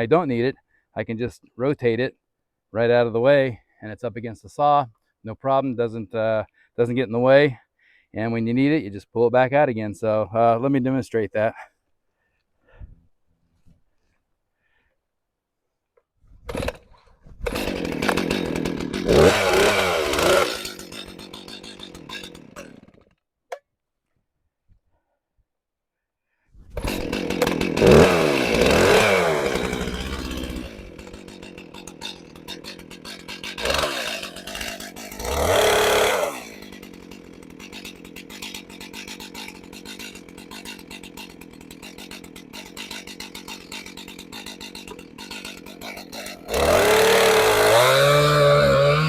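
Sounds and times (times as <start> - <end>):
chainsaw starting and revving: 16.4 - 23.2, 26.6 - 49.0
chainsaw idling: 16.5 - 16.8, 17.4 - 23.1, 26.8 - 49.0.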